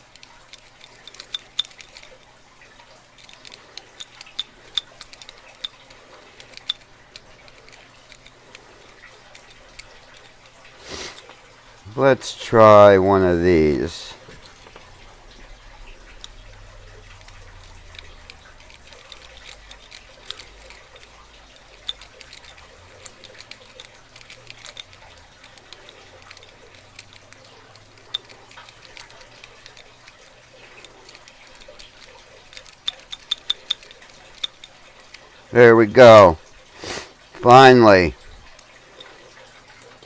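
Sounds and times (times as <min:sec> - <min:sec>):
lock pick clicking in lock: 0:03.2 - 0:08.4, 0:16.1 - 0:30.2, 0:30.8 - 0:35.2.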